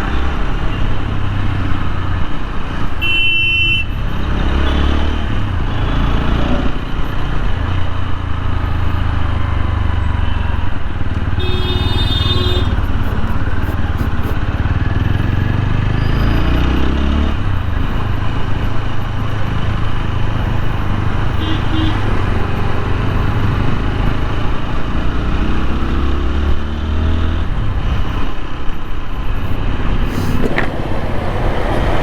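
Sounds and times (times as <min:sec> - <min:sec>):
wind rushing on microphone: 0:29.7 - 0:32.0.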